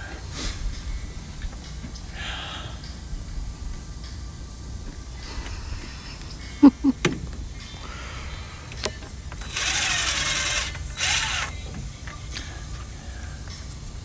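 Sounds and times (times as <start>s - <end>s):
power drill whining: 5.2s - 13.6s.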